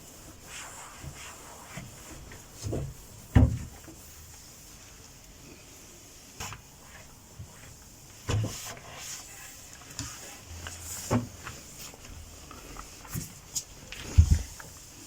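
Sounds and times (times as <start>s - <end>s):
light knocks clicks and scrapes: 6.4s - 14.9s.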